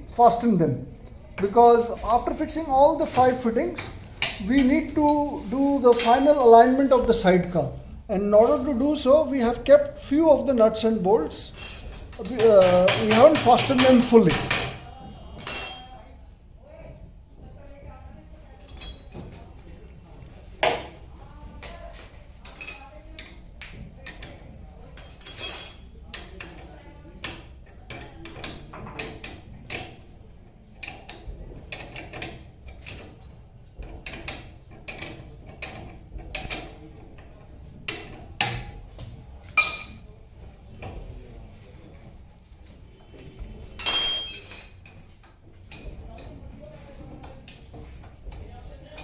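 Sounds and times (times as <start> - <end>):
hand tools clinking on metal: 5.9 - 7.2, 11.3 - 14.8, 15.4 - 16.0, 24.1 - 26.4, 37.9 - 40.2, 43.8 - 45.0.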